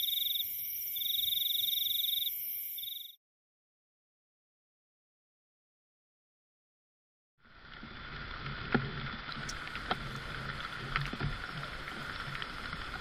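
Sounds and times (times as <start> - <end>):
rain falling in forest: 7.4 - 13.0.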